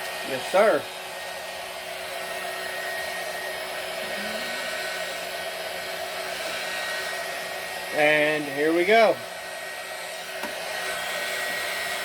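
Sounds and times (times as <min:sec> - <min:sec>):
heat gun blowing hiss: 0:00.0 - 0:12.0.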